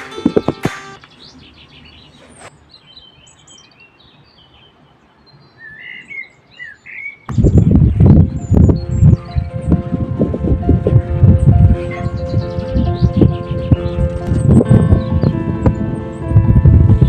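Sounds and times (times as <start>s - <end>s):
background music: 0.0s - 1.0s, 8.0s - 17.0s
small birds chirping: 0.0s - 9.5s.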